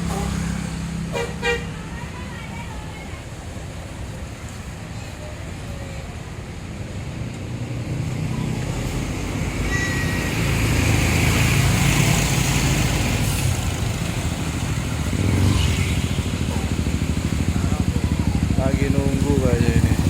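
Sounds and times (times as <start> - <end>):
bus engine rumbling: 0.0 - 20.0
brief high squeak: 9.6 - 10.4.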